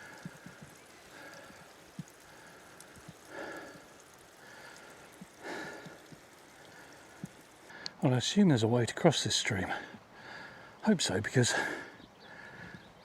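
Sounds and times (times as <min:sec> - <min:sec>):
person breathing out loudly: 0:01.1 - 0:07.8.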